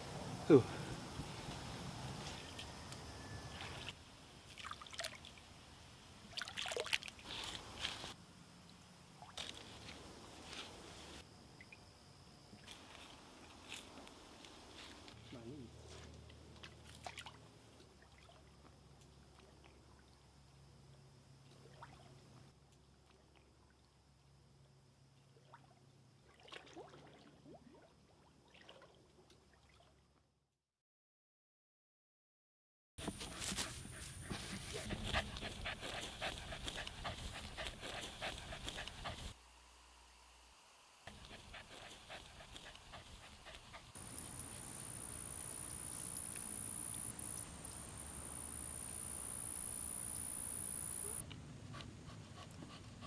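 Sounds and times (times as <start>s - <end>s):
faint watery splashes: 3.5s - 5.6s, 6.2s - 7.8s, 14.8s - 20.3s, 21.4s - 24.0s, 25.2s - 30.0s
dog panting: 33.0s - 39.4s, 41.1s - 44.0s, 51.7s - 53.0s.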